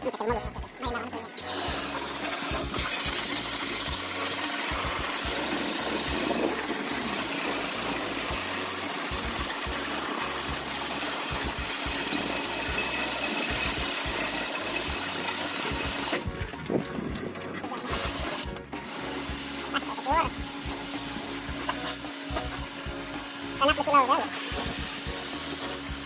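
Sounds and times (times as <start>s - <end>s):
motor-driven machine hissing: 1.4s - 16.2s.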